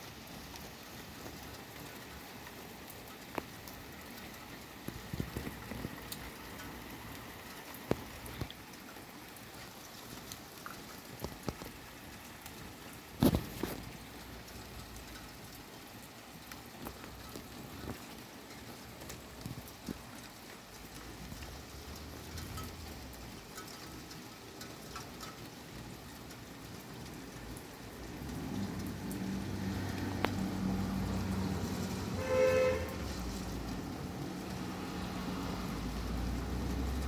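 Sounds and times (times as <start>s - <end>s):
drips and patters: 0.0s - 37.0s
heavy rain falling: 0.0s - 37.0s
passing vehicle rumble: 27.1s - 37.0s.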